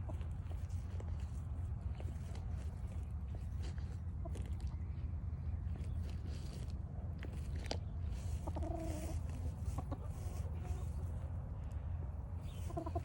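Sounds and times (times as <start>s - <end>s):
chickens clucking: 0.0s - 13.0s
steady low rumble: 0.0s - 13.0s.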